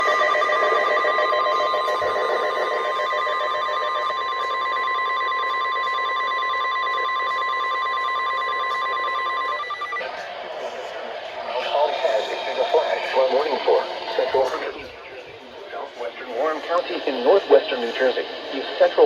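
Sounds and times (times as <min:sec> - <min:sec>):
steady alarm beep: 0:00.0 - 0:14.7.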